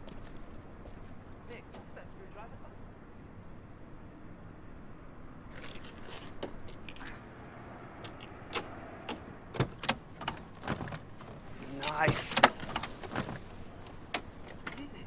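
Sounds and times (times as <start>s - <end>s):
clicks and knocks of handling: 9.6s - 14.9s.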